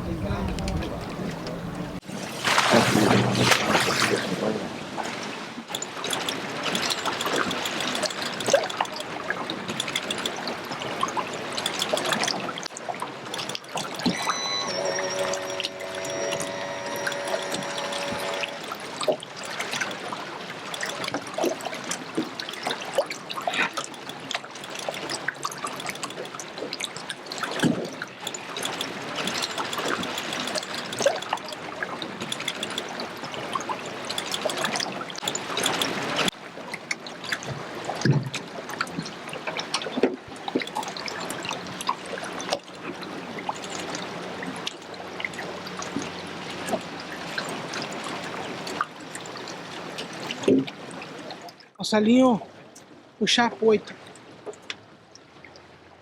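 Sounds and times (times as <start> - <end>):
water splashing and trickling: 0.0 - 56.0.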